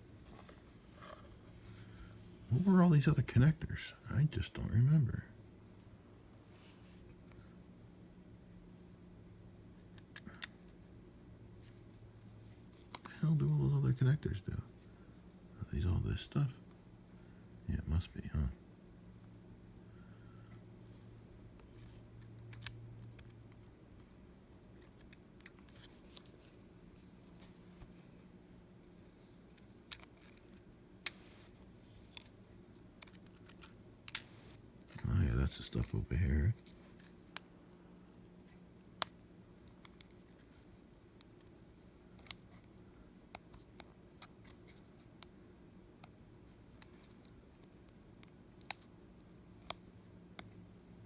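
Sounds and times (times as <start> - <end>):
low steady hum: 0.0 - 51.0.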